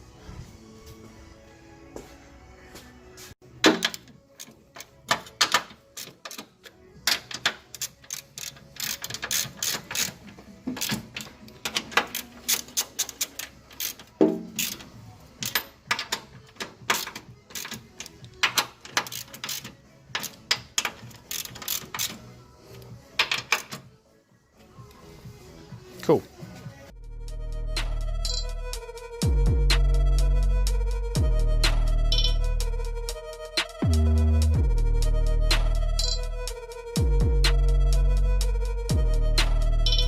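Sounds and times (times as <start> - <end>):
wrench clicking and ratcheting: 3.8 - 22.2, 32.1 - 32.5.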